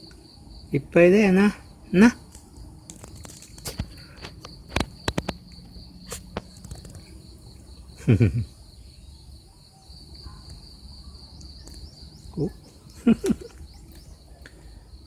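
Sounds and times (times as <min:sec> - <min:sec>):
insects trilling: 0:00.0 - 0:15.0
sharp clicks: 0:02.9 - 0:05.5.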